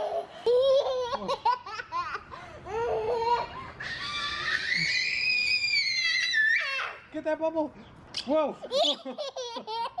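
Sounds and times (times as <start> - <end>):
baby squealing: 2.7 - 7.0
baby giggling: 8.6 - 10.0.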